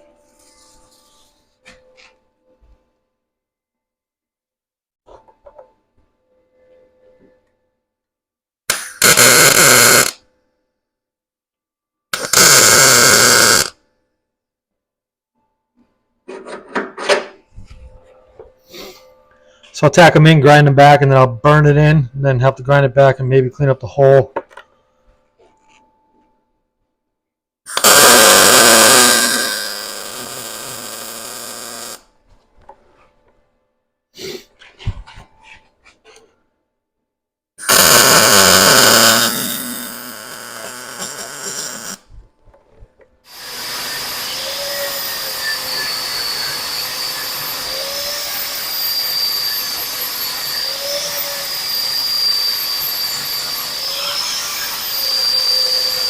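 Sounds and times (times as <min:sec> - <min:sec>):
power tool bursts on steel: 0:08.7 - 0:10.2, 0:12.1 - 0:13.8, 0:27.7 - 0:32.1, 0:37.6 - 0:42.1, 0:43.3 - 0:56.0
electric grinder whining on steel: 0:12.2 - 0:13.7, 0:27.7 - 0:32.0, 0:37.7 - 0:42.0, 0:43.3 - 0:56.0.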